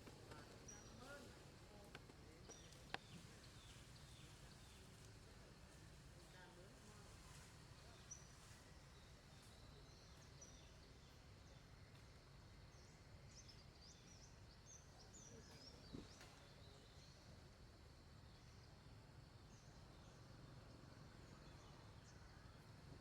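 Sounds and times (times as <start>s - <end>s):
low steady background hum: 0.0s - 23.0s
small birds chirping: 0.3s - 5.1s.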